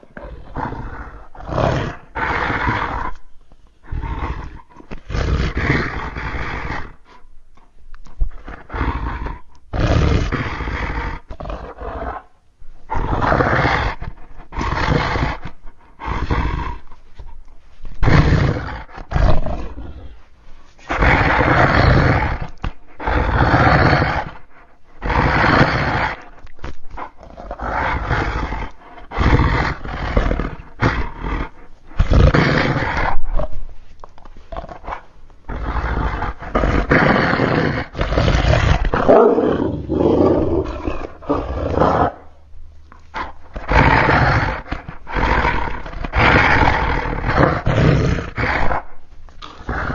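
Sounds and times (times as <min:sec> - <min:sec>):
animal-like roars: 0:43.2 - 0:48.8.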